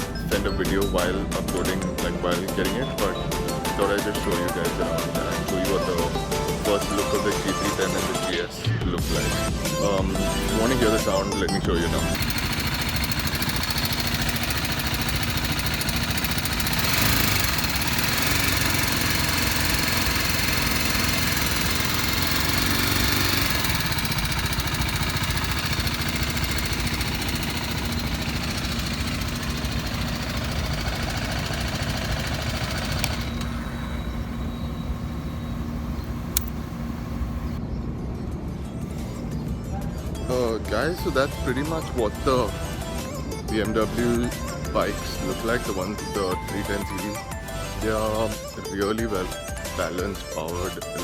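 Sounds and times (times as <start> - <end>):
motorcycle engine idling: 12.1 - 37.6.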